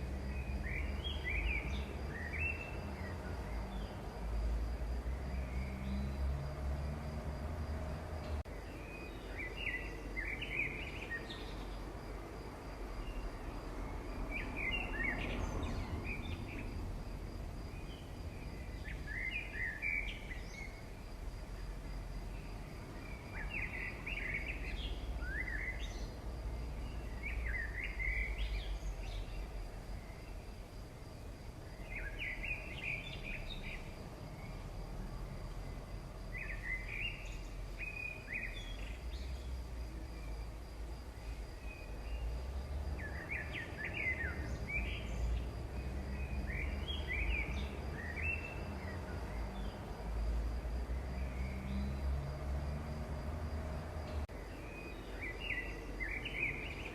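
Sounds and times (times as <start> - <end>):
bird chirping: 13.0 - 16.8.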